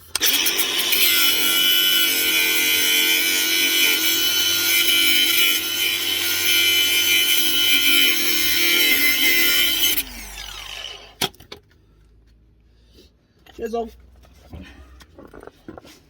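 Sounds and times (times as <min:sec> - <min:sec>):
angle grinder cutting metal: 0:00.0 - 0:11.3.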